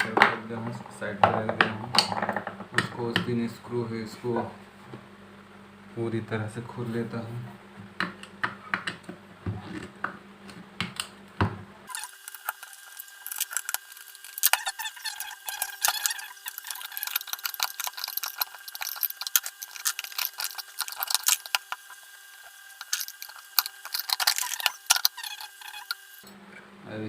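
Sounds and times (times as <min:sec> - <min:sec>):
screws being undone: 0:11.9 - 0:26.0
metal casing parts handled: 0:12.0 - 0:26.0.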